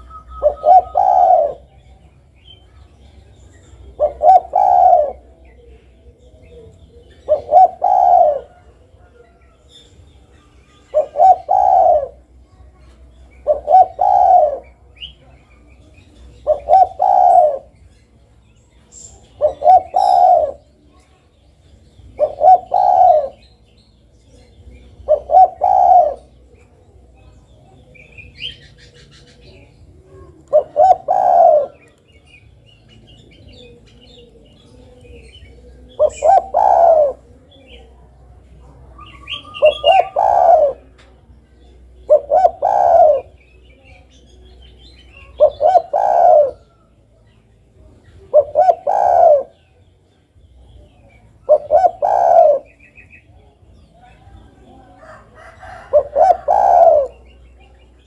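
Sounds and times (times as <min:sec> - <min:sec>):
dove cooing: 0:00.0 - 0:02.0, 0:03.3 - 0:10.0, 0:10.9 - 0:15.2, 0:15.8 - 0:17.9, 0:18.9 - 0:20.8, 0:21.9 - 0:23.5, 0:24.5 - 0:26.6, 0:27.6 - 0:32.0, 0:33.0 - 0:41.2, 0:41.9 - 0:44.1, 0:45.0 - 0:47.0, 0:48.2 - 0:49.8, 0:50.7 - 0:58.0
faint bird chirps: 0:00.0 - 0:26.6.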